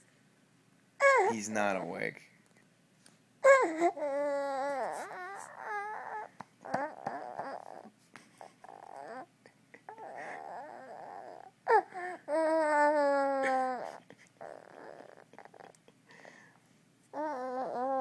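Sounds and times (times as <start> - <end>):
baby whimpering: 1.0 - 2.0, 3.4 - 16.2, 17.1 - 18.0
baby whining: 1.0 - 2.0, 3.4 - 15.8, 17.1 - 18.0.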